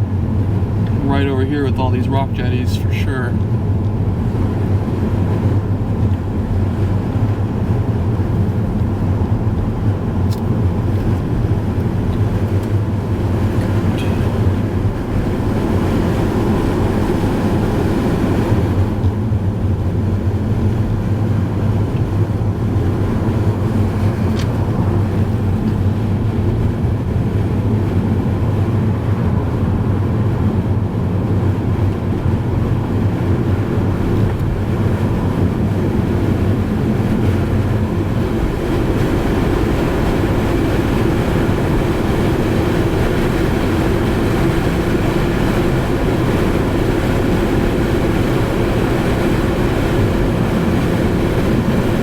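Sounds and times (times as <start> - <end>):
car road and engine noise: 0.0 - 52.0.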